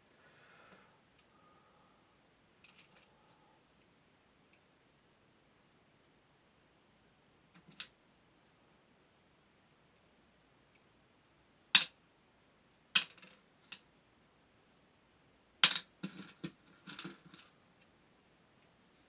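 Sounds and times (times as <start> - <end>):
plastic parts clicking and clacking: 2.6 - 3.1, 7.6 - 7.9, 15.6 - 17.9.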